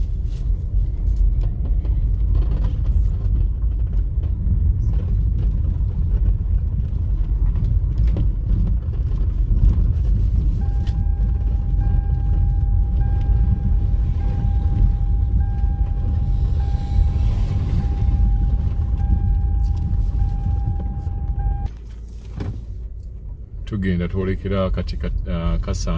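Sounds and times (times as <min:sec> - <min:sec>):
vehicle rumbling on rough road: 0:00.0 - 0:25.9
steady high-pitched tone: 0:10.6 - 0:21.7.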